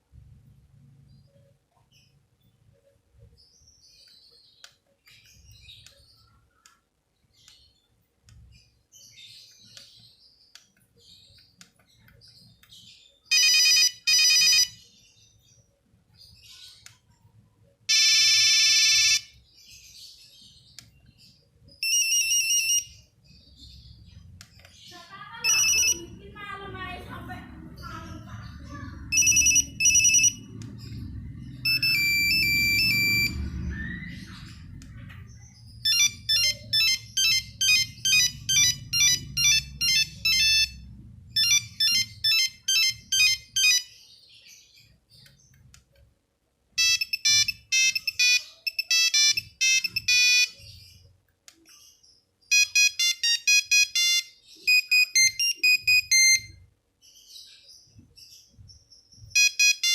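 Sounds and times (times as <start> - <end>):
phone ringtone beeps: 13.3 - 14.9, 17.9 - 19.4, 21.8 - 23.1, 25.4 - 26.2, 29.1 - 34.6, 35.8 - 44.0, 46.8 - 50.8, 52.5 - 56.6, 59.4 - 59.9.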